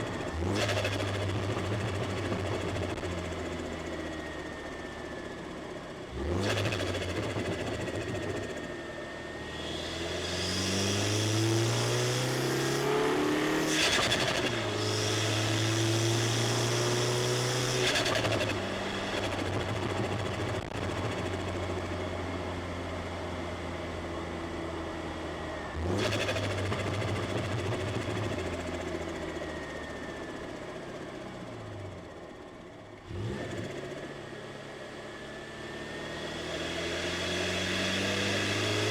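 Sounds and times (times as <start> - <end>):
turbocharged car engine revving: 0.0 - 3.5, 6.1 - 8.6, 9.5 - 21.7, 25.8 - 29.0, 33.0 - 34.2.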